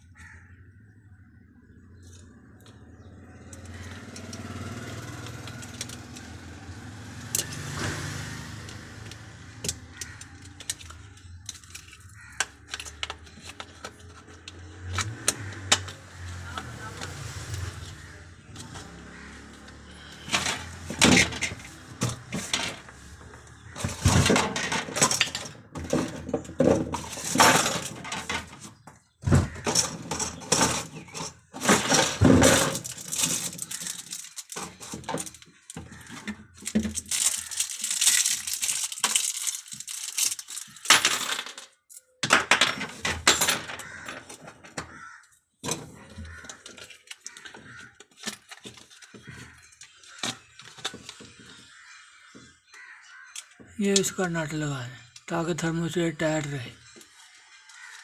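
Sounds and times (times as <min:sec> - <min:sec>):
small metal parts clicking and rattling: 0:09.6 - 0:16.0, 0:20.0 - 0:23.0, 0:23.8 - 0:28.7, 0:29.6 - 0:44.8.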